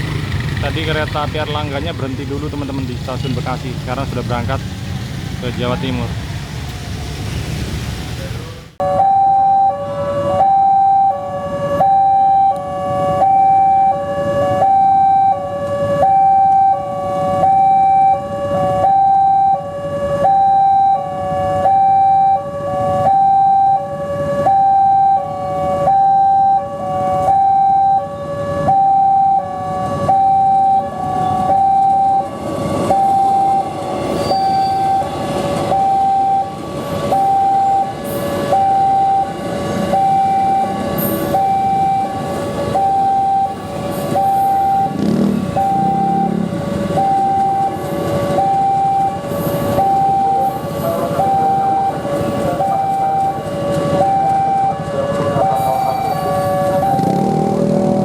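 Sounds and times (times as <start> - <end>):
approaching train: 0.0 - 8.8, 29.4 - 58.0
level-crossing two-tone alarm: 8.8 - 57.8.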